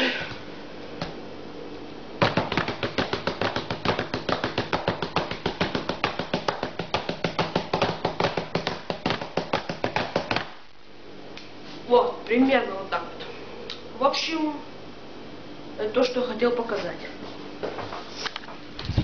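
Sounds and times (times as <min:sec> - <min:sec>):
hands knocking on hard surface: 0:02.2 - 0:10.5.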